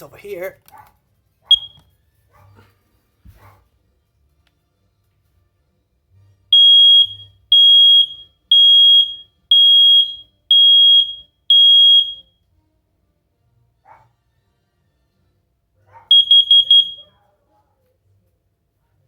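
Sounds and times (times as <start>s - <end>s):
smoke alarm beeps: 1.5s - 1.9s, 6.5s - 12.4s, 16.1s - 17.1s.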